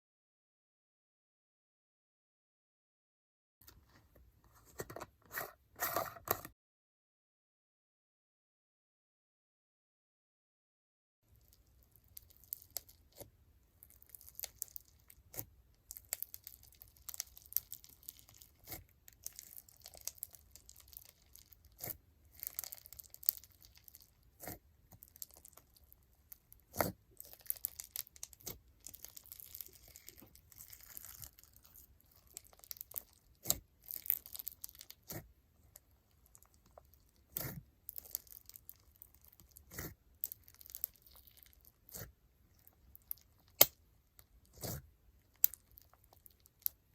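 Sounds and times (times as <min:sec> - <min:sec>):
slime crackling and popping: 0:11.4 - 0:46.9.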